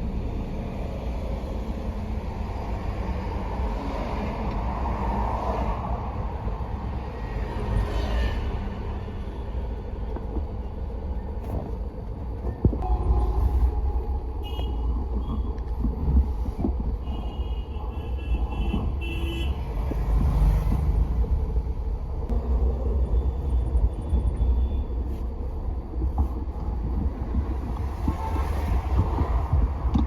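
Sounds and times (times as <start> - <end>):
car engine rumbling: 9.0 - 30.0
car horn toots: 12.8 - 15.5.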